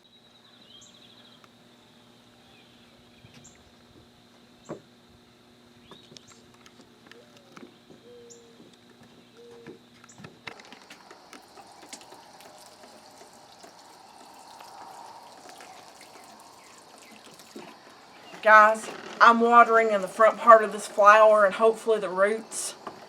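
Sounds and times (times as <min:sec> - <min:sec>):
water trickling onto plants: 0:10.6 - 0:18.8.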